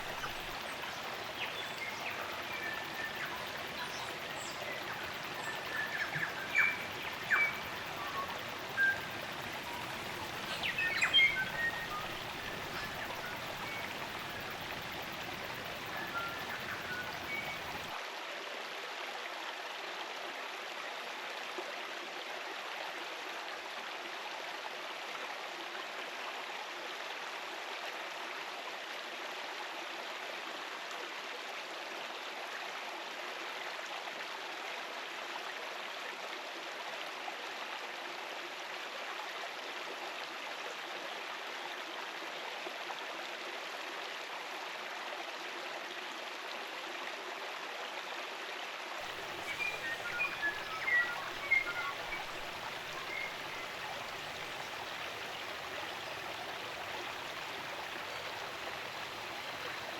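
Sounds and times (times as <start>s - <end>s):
stream water rushing: 0.0s - 27.6s, 32.1s - 59.9s
bird chirps: 49.1s - 54.0s.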